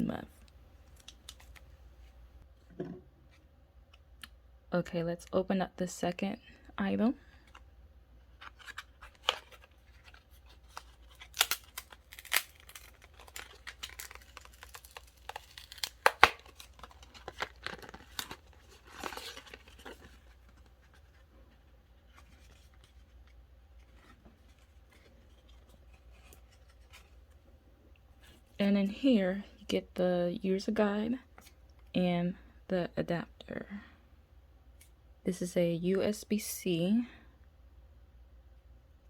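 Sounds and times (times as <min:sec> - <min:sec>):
packaging ripping and crinkling: 0:08.5 - 0:20.7.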